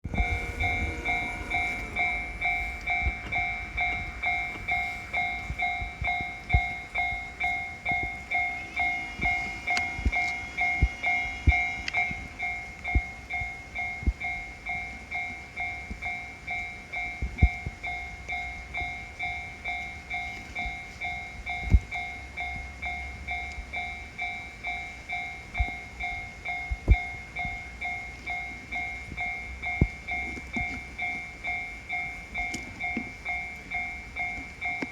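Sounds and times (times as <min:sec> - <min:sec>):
higher electronic tone: 0:00.0 - 0:13.3
low rumble: 0:00.0 - 0:14.2
level-crossing alarm bell ringing: 0:00.0 - 0:34.9.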